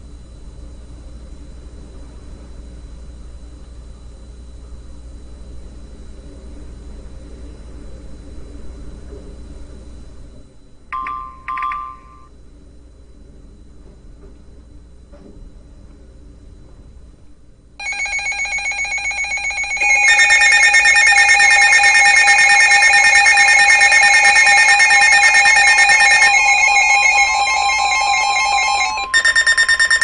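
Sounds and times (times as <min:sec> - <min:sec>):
pulsing emergency alert tones: 0:17.8 - 0:30.0.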